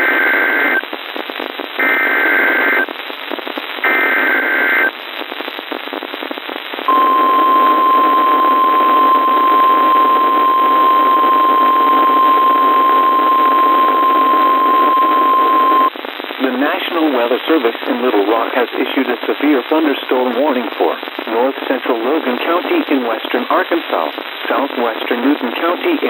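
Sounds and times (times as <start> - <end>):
static hiss: 2.6 - 26.0
steady alert tone: 6.9 - 15.9.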